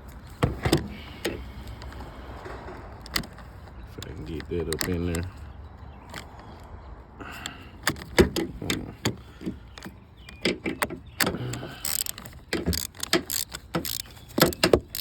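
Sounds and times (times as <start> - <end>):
wrench clicking and clanking: 7.8 - 15.0.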